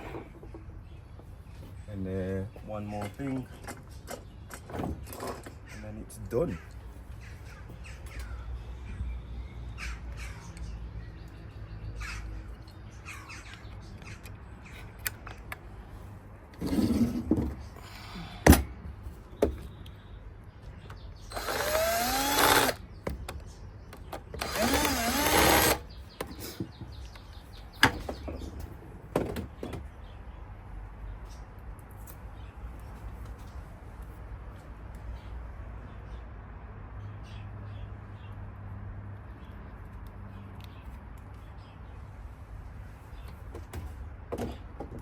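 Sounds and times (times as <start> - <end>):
power drill whirring: 21.3 - 22.8, 24.4 - 25.9.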